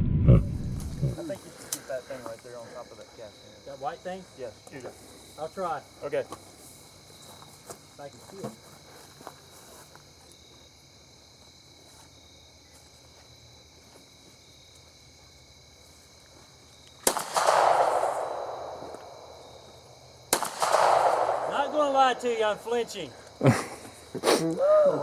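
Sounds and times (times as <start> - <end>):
insects trilling: 1.0 - 25.0
gunshots with rolling echo: 17.0 - 19.6, 20.3 - 23.2.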